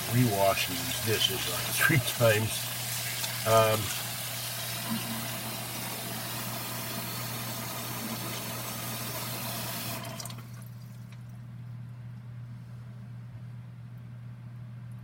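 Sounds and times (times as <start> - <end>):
tap water running into sink: 0.0 - 10.7
steady low hum: 10.4 - 15.0.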